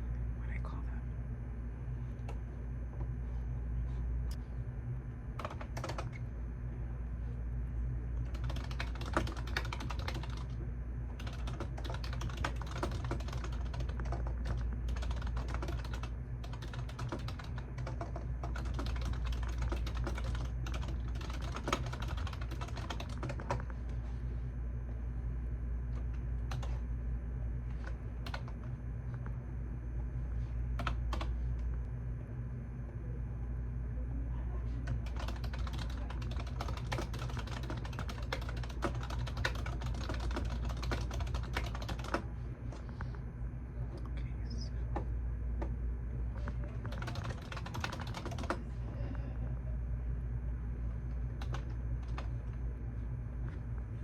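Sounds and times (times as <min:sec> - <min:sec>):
steady low hum: 0:00.0 - 0:54.0
typing on computer keyboard: 0:05.4 - 0:06.2, 0:08.2 - 0:10.6, 0:11.2 - 0:23.6, 0:26.5 - 0:26.8, 0:27.8 - 0:28.6, 0:34.8 - 0:42.2, 0:46.8 - 0:48.6, 0:51.4 - 0:52.3.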